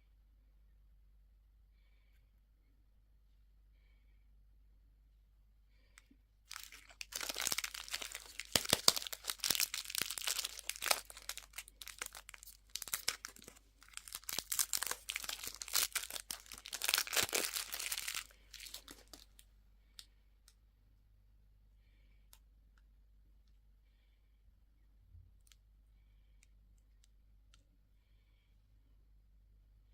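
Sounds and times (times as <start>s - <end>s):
candy wrapper tearing and crinkling: 6.5s - 19.4s.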